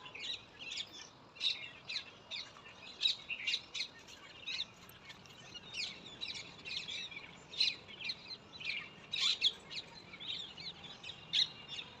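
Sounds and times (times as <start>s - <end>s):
small birds chirping: 0.0s - 12.0s.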